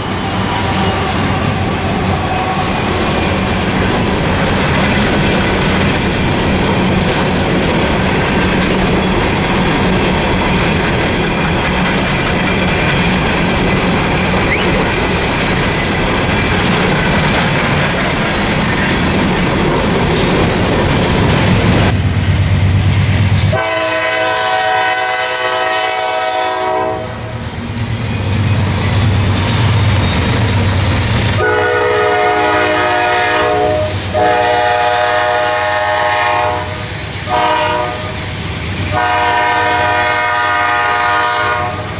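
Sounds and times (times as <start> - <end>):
train rumble and rail clatter: 0.0 - 41.9
locomotive air horn: 0.1 - 3.0, 23.5 - 27.3, 31.4 - 38.2, 38.9 - 41.9.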